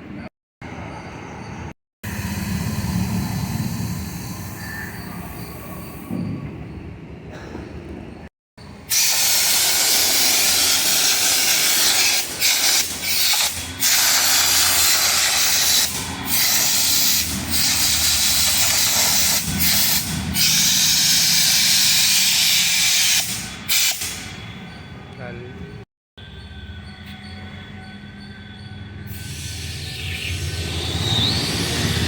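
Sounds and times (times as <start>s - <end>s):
high-pressure water jet spraying: 8.9s - 24.0s.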